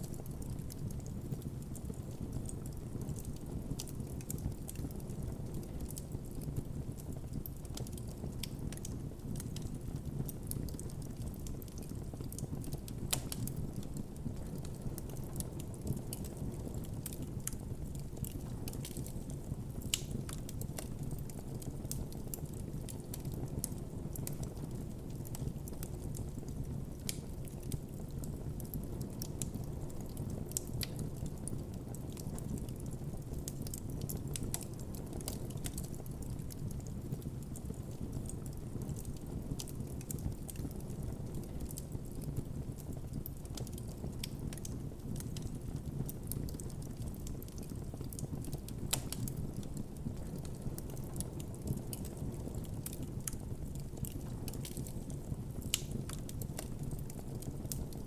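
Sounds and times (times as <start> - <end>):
campfire flame rumble: 0.0 - 58.0
fire crackling and popping: 0.0 - 58.0.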